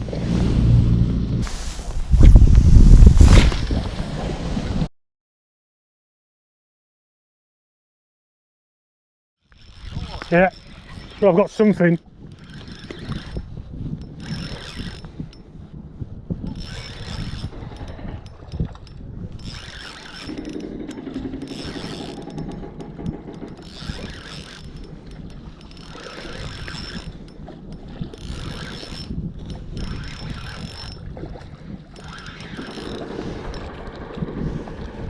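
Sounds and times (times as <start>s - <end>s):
wind on microphone: 0.0s - 4.9s, 9.6s - 35.0s
fishing reel winding: 9.5s - 15.5s, 16.4s - 31.2s, 31.9s - 35.0s.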